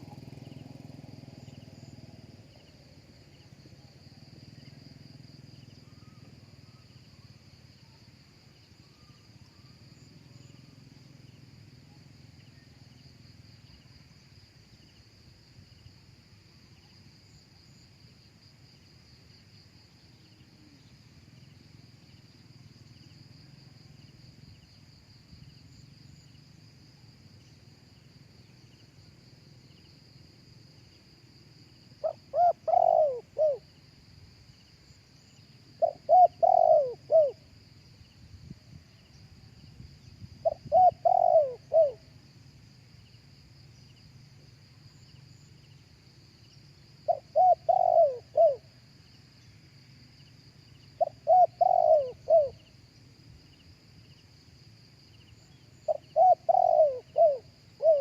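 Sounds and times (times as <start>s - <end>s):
high whine of insects: 0.0s - 58.0s
dove cooing: 32.0s - 33.7s, 35.8s - 37.4s, 40.4s - 42.1s, 47.1s - 48.7s, 51.0s - 52.6s, 55.9s - 58.0s.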